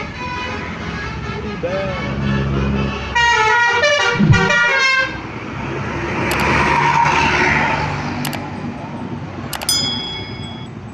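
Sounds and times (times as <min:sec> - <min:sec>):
multi-tone bus horn: 0:00.0 - 0:05.2
rushing noise: 0:04.0 - 0:04.9.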